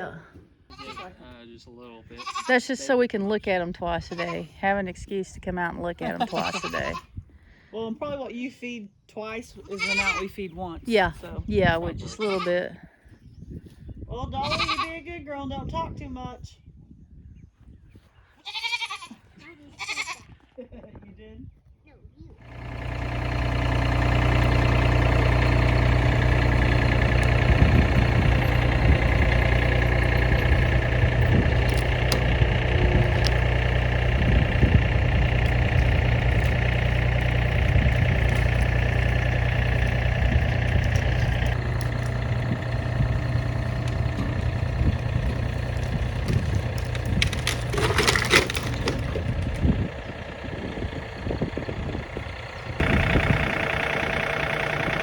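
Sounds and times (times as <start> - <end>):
vehicle engine running: 0.0 - 0.9, 2.5 - 7.0, 22.4 - 55.0
crackles and knocks: 23.0 - 49.8.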